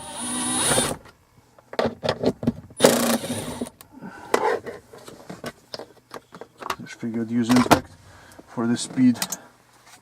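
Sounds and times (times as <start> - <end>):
impact driver running: 2.8 - 3.7.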